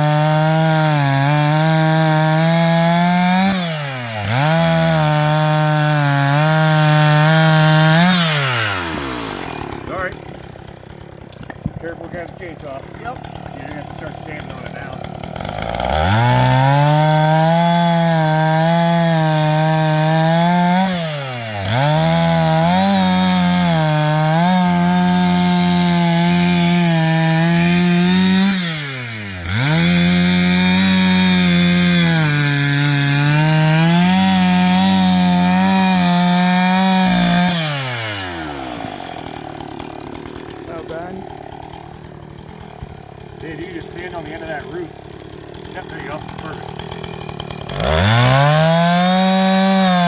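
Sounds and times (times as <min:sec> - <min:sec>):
chainsaw cutting wood: 0:00.0 - 0:50.0.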